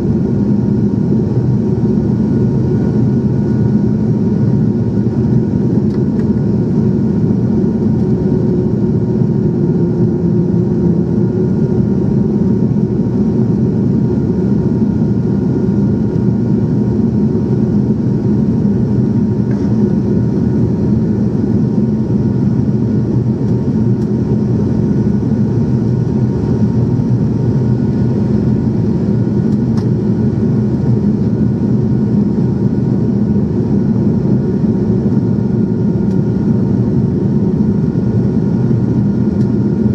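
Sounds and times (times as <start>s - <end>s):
aircraft cabin engine drone: 0.0s - 39.9s.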